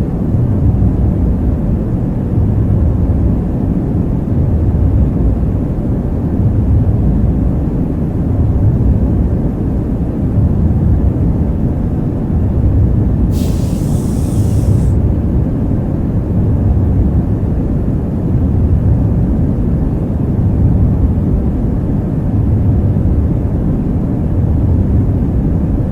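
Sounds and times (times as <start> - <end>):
low engine rumble: 13.3 - 15.0
short hiss: 13.3 - 15.0.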